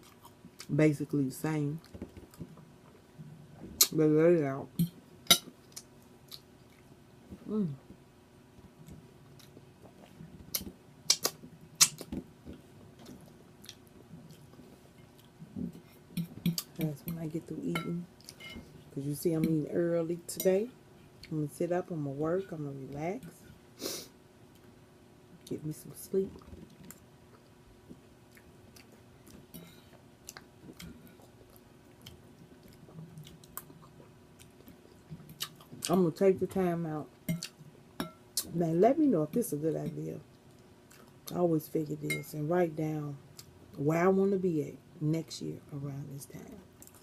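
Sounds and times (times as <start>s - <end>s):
person chewing food: 0.0s - 0.7s, 8.7s - 16.7s, 26.4s - 35.9s, 40.3s - 41.3s, 46.8s - 47.0s
chewing with wet mouth smacks: 30.2s - 35.9s, 40.9s - 41.2s.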